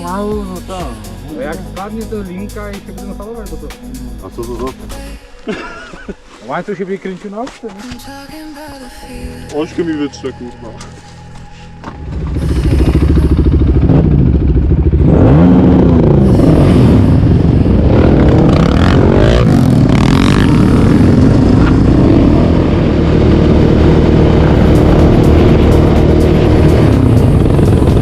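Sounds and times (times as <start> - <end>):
quad bike engine revving: 12.0 - 28.0.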